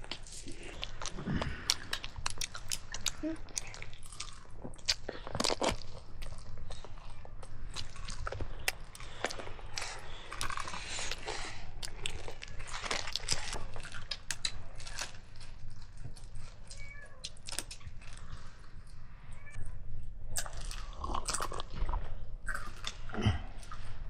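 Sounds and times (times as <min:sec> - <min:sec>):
eating crunches: 0:00.0 - 0:19.0, 0:20.3 - 0:24.0.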